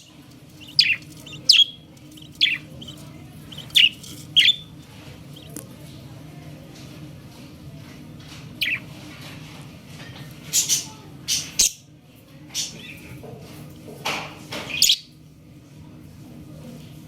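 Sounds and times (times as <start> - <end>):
steady low hum: 0.0 - 10.4
budgerigar chirping: 0.5 - 4.7, 5.3 - 5.5, 8.6 - 8.8.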